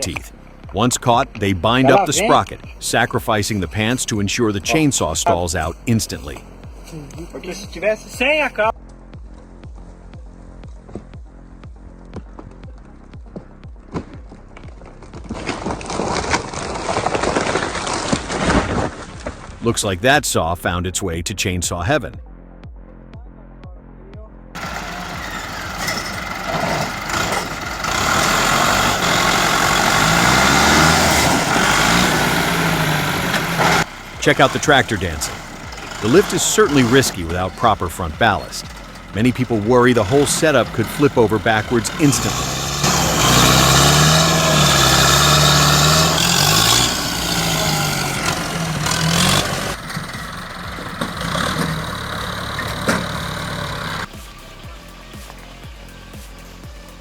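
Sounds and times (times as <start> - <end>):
rough rumbling noise: 0.0 - 8.8, 24.6 - 54.7
heavy vehicle engine running hard: 24.6 - 57.0.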